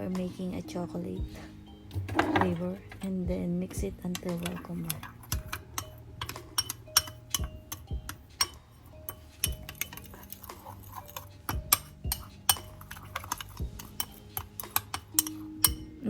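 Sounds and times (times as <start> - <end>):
utensil stirring in a bowl: 4.1 - 15.9.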